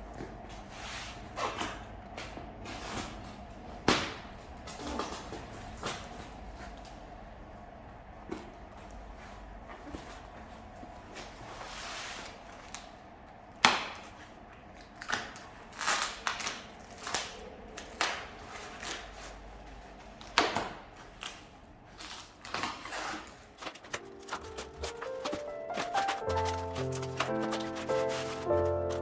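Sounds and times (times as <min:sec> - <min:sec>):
footsteps crunching dry leaves: 0:23.6 - 0:29.0.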